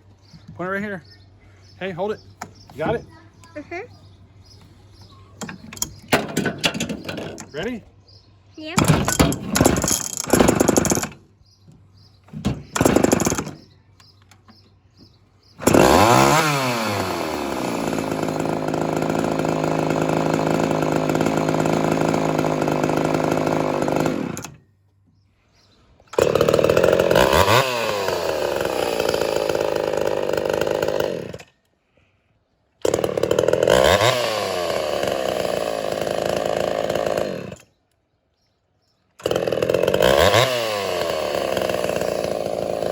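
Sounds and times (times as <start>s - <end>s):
chainsaw revving: 5.4s - 7.8s, 8.8s - 11.3s, 12.4s - 13.7s, 15.6s - 24.6s, 26.1s - 31.6s, 32.8s - 37.7s, 39.2s - 42.9s.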